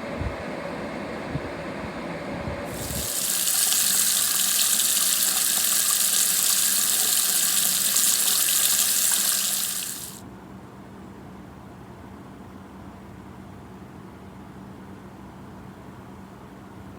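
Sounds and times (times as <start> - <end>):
water running from tap: 2.7 - 10.2.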